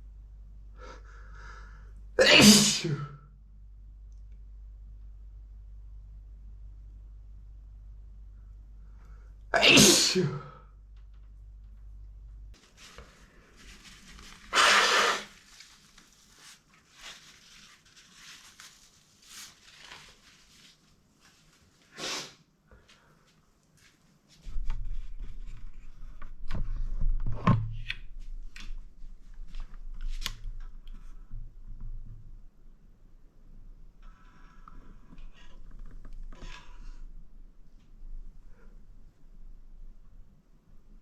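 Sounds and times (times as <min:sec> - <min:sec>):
person sneezing: 0:02.2 - 0:03.2, 0:09.6 - 0:10.6, 0:14.5 - 0:15.3, 0:22.0 - 0:22.4
low hum: 0:03.4 - 0:09.5.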